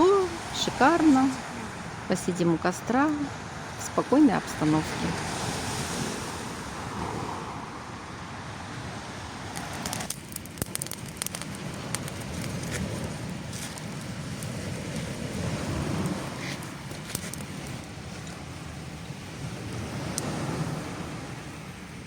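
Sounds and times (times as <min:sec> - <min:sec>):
sea surf: 0:00.0 - 0:22.0
campfire crackling and popping: 0:09.5 - 0:21.6.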